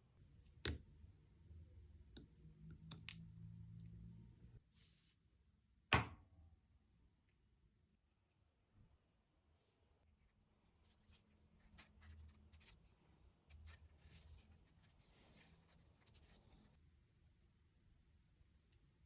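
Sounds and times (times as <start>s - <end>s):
faint scratching and scraping: 9.6s - 16.8s.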